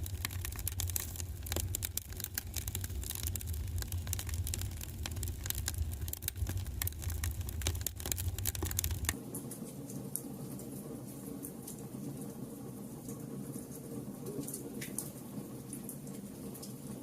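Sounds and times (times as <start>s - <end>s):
wood fire crackling and popping: 0.0s - 12.3s.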